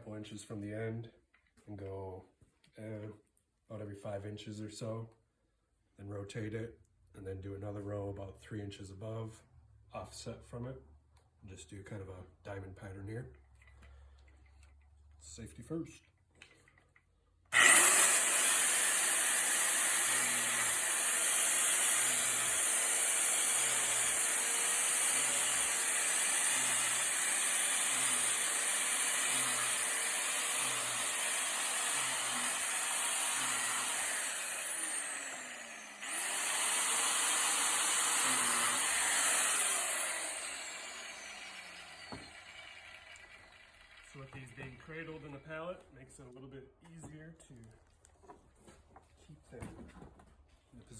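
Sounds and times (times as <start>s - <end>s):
angle grinder drilling wood: 17.5s - 45.5s.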